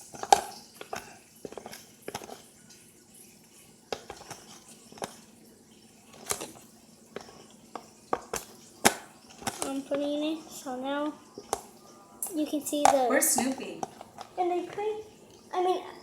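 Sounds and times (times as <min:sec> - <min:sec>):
spoon scraping a mixing bowl: 0:00.0 - 0:02.6, 0:03.4 - 0:05.4, 0:06.0 - 0:09.9.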